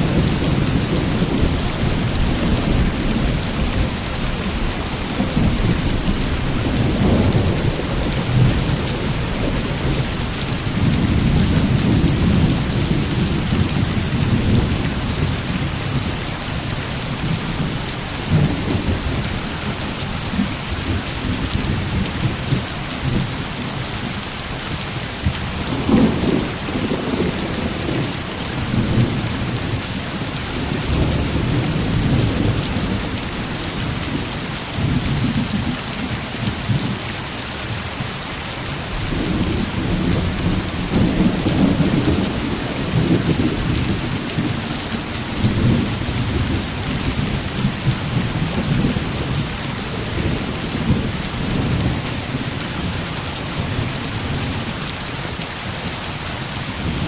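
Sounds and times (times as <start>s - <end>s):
thunder rumbling: 0.0s - 16.2s, 38.9s - 54.7s
heavy rain falling: 0.0s - 57.0s.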